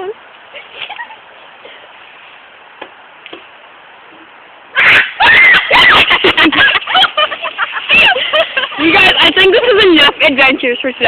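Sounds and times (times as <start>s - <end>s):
girls screaming: 4.7s - 6.2s.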